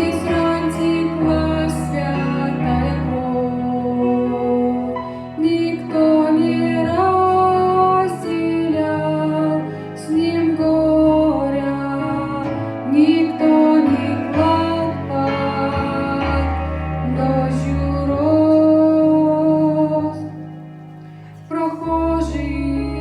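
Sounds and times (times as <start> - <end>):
sustained low chords: 0.0 - 23.0
woman singing long notes: 21.5 - 23.0.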